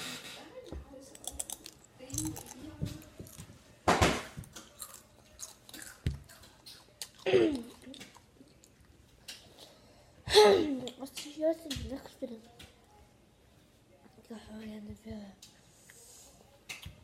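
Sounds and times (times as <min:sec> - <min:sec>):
chips being chewed: 0:01.1 - 0:03.4, 0:04.5 - 0:09.7.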